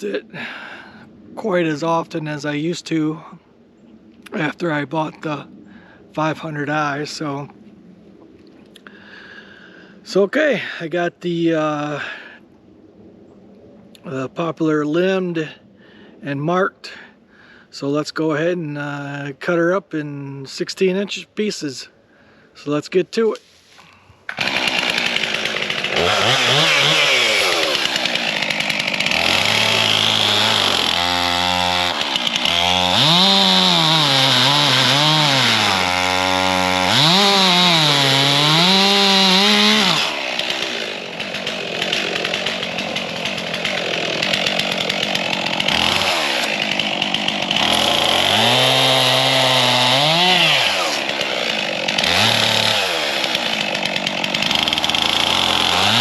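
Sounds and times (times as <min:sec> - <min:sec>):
chainsaw cutting log: 0:24.3 - 0:56.0.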